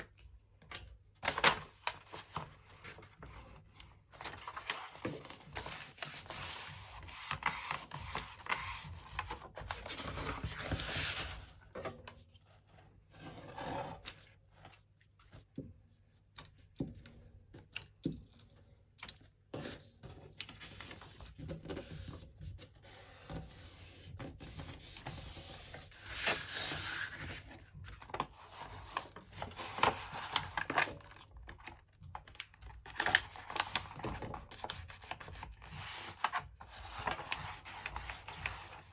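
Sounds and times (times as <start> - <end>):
hands rustling paper and cardboard: 24.2 - 38.9.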